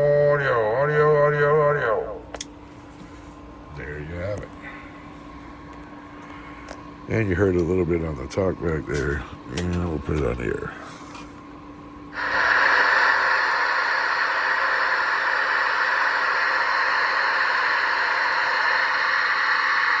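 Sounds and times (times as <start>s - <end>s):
radio static hiss: 12.1s - 20.0s.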